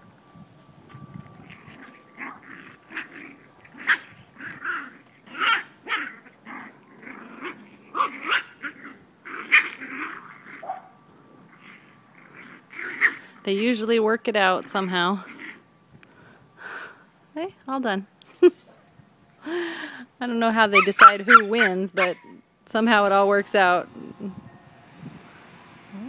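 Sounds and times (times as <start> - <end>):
puppies barking and yapping: 0.8 - 13.4, 14.2 - 15.8, 20.7 - 22.5.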